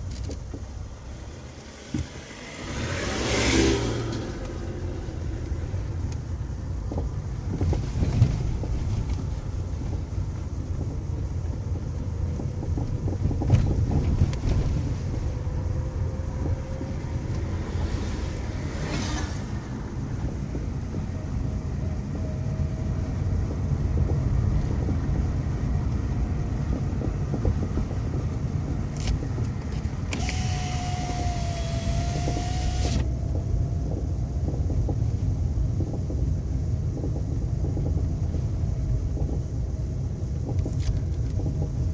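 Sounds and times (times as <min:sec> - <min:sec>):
road noise rumble: 0:00.0 - 0:41.9
whine with hiss: 0:29.8 - 0:41.9.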